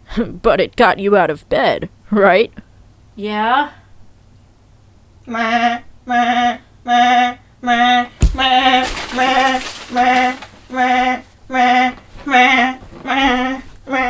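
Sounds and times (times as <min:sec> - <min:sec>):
sharp knock: 0:08.2 - 0:10.6.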